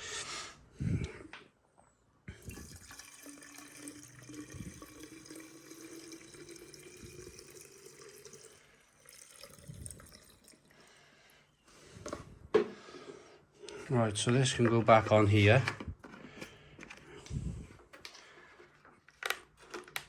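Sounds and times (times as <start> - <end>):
liquid trickling into tank: 2.3 - 11.0.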